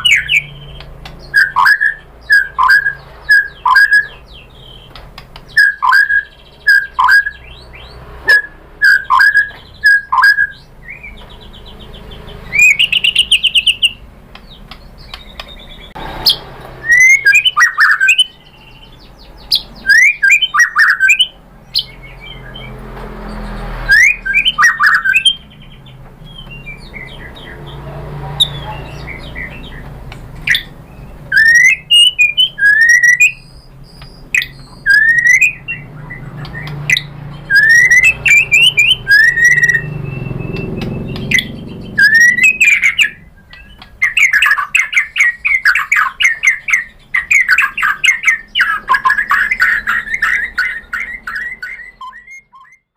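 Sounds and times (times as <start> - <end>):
bird singing whistles: 0.0 - 27.8, 28.4 - 52.9.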